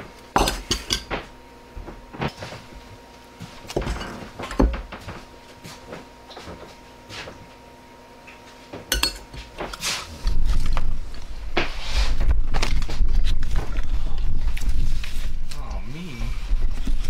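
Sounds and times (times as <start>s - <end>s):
bowls and spoons clinking: 8.9s - 9.4s.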